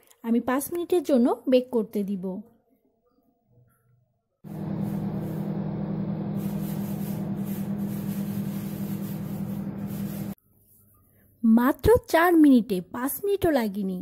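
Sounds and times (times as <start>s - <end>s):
microwave oven humming: 4.5s - 10.3s.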